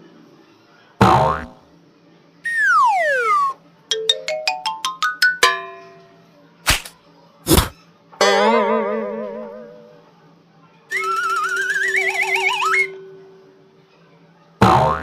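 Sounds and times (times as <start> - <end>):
wobbling warbling tone: 2.5 - 5.4
rising plucked notes: 2.5 - 5.9, 8.2 - 9.9.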